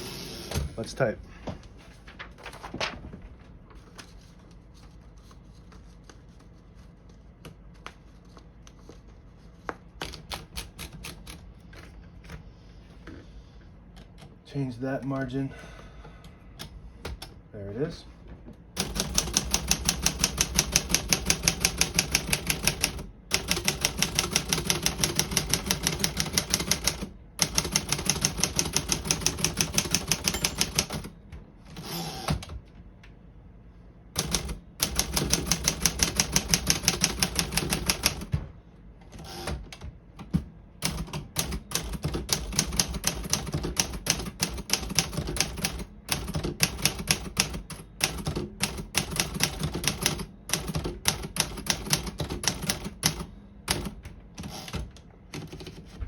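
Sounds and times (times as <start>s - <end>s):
typewriter keystrokes: 10.0s - 11.4s, 18.8s - 31.1s, 34.2s - 38.3s, 40.8s - 56.0s.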